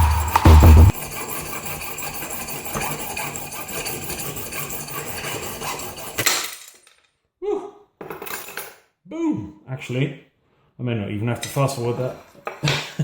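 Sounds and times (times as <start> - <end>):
bass-heavy electronic music: 0.0 - 0.9
tool grinding through metal: 0.0 - 6.4.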